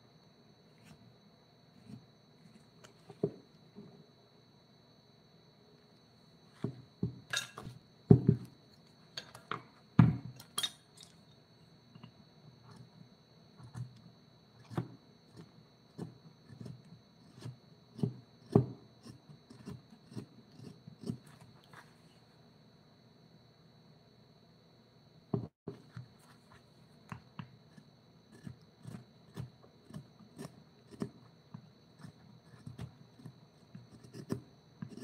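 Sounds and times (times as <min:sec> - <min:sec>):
hand tools knocking on wood: 0:08.1 - 0:08.5, 0:25.4 - 0:25.8.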